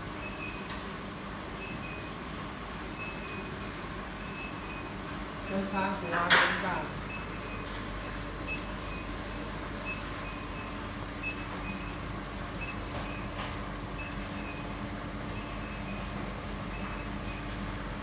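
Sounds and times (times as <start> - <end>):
induction heater humming: 0.0 - 18.0.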